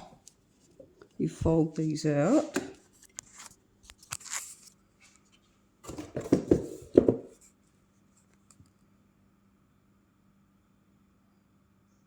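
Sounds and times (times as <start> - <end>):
faint hum: 7.8 - 12.0.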